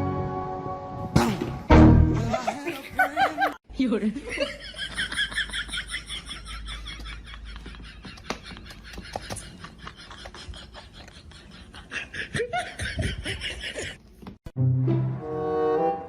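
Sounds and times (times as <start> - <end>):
person laughing hard: 2.2 - 3.6, 4.3 - 14.0.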